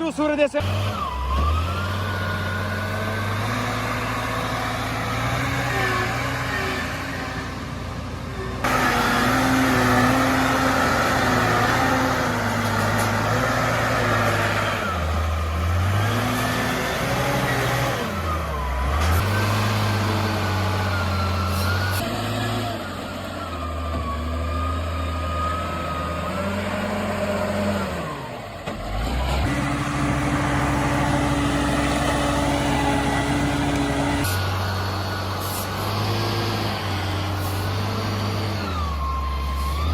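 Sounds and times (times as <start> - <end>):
truck engine running: 0.0 - 39.9.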